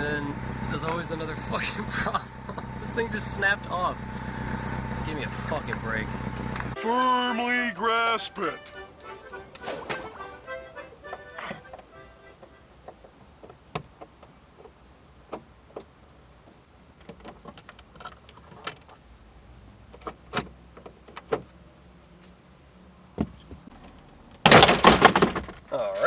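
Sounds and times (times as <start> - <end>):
loud rattling noise: 24.5 - 25.7.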